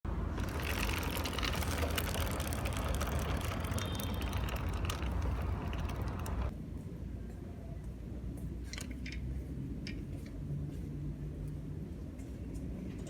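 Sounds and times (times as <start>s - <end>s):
motorcycle engine rumble: 0.2s - 6.5s
motorcycle chain clattering: 0.4s - 6.5s.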